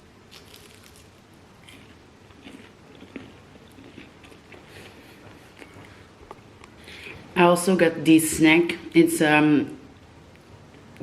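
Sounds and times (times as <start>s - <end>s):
person chewing fries: 0.3s - 6.0s.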